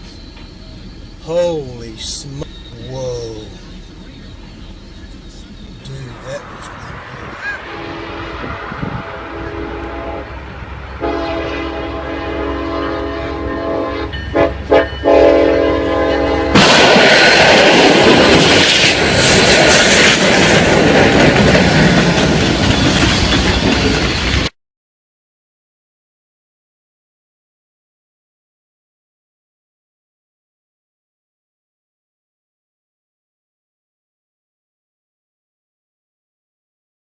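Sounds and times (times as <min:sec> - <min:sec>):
train passing close by: 0:00.0 - 0:24.5
locomotive air horn: 0:07.6 - 0:10.4, 0:11.0 - 0:16.9.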